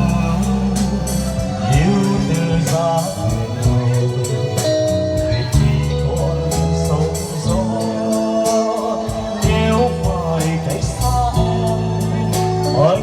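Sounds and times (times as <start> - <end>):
slow ballad instrumental: 0.0 - 13.0.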